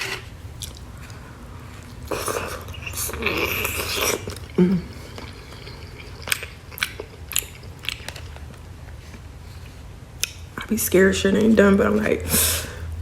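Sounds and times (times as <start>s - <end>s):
person chewing wetly: 0.5s - 10.5s
mouth smacks: 1.8s - 9.2s.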